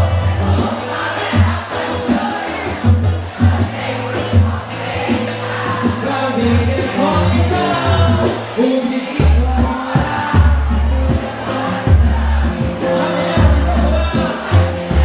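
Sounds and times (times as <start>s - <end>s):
singing over heavy bass music: 0.0s - 15.0s.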